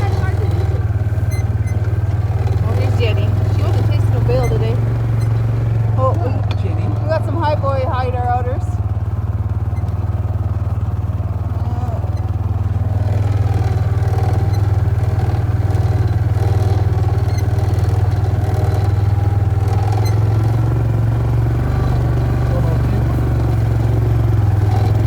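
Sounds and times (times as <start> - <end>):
vehicle engine running: 0.0 - 25.0.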